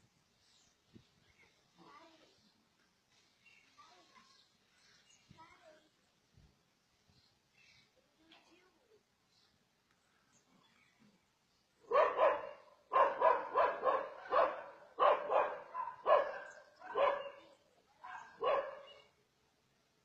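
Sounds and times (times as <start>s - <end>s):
dog barking: 11.9s - 19.1s.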